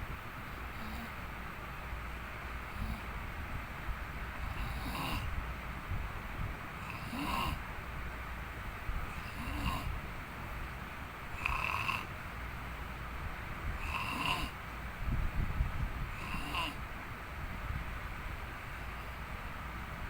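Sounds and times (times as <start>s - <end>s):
loud squeaky snoring: 2.8s - 3.0s, 4.5s - 5.3s, 6.8s - 7.6s, 9.1s - 9.9s, 11.4s - 12.1s, 13.8s - 14.6s, 16.1s - 16.8s.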